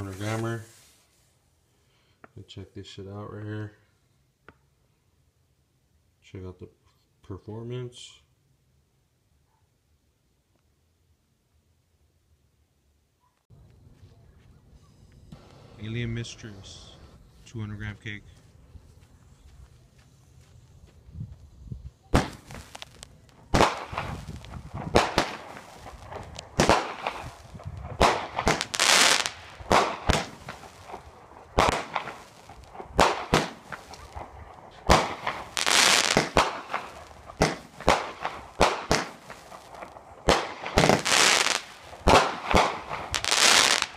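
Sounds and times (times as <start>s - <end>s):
firework hissing crackle: 0.0s - 1.4s, 22.0s - 43.9s
firework launch thumps and bangs: 22.1s - 31.0s, 31.6s - 43.9s.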